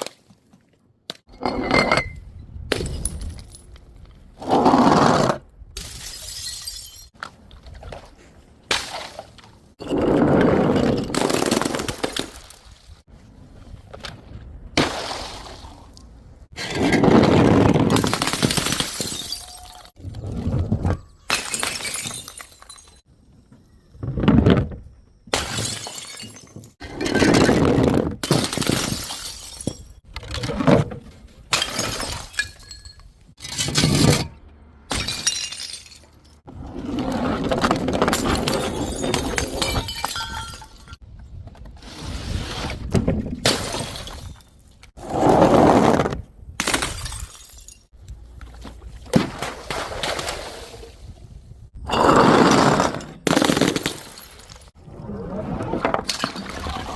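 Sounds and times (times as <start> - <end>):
glass bottles shattering: 5.8 - 7.2, 18.0 - 20.0, 20.7 - 23.1, 25.3 - 30.0, 31.4 - 34.3, 34.9 - 36.4, 38.1 - 41.0, 43.4 - 44.8, 46.6 - 47.9, 51.8 - 54.7
broken glass tinkling: 18.5 - 20.0, 20.9 - 23.0, 38.8 - 41.0.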